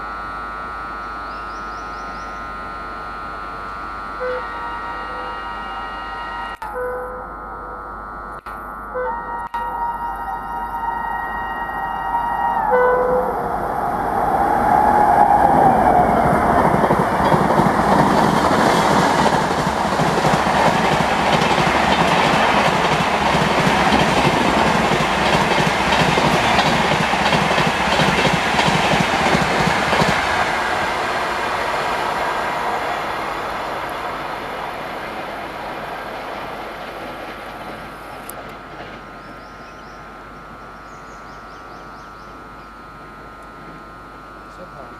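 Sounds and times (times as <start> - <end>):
train wheels clattering on track: 15.9 - 31.1, 34.8 - 39.9.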